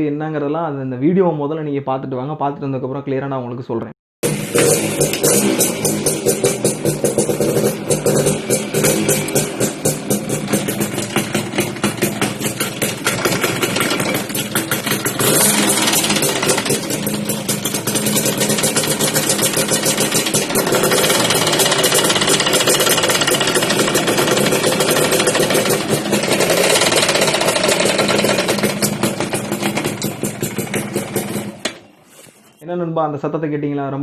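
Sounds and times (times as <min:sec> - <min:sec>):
motorcycle engine grinding clatter: 0:04.2 - 0:32.0.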